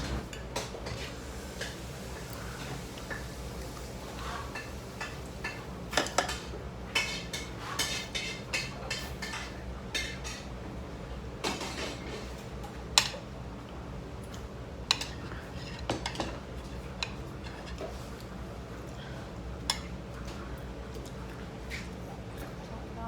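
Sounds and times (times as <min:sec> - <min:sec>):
steady low hum: 0:00.0 - 0:00.3
utensils clinking against dishes: 0:00.0 - 0:10.5, 0:11.4 - 0:12.4, 0:14.3 - 0:18.9, 0:19.7 - 0:22.5.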